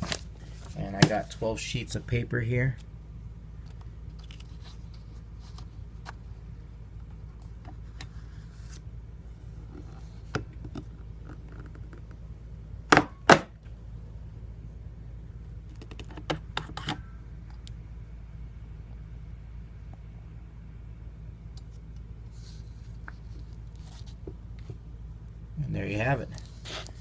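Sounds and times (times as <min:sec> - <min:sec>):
paper handling clicks: 0:03.6 - 0:06.2.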